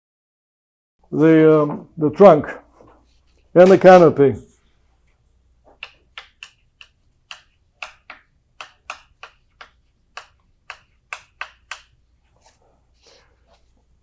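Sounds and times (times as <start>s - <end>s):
drawing tool tapping on board: 5.8s - 12.0s.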